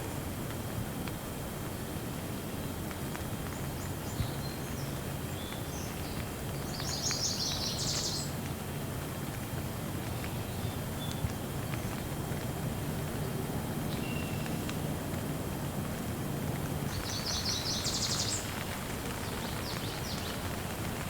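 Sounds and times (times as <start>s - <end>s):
steady rain hiss: 0.0s - 21.0s
bird chirping: 16.9s - 18.5s.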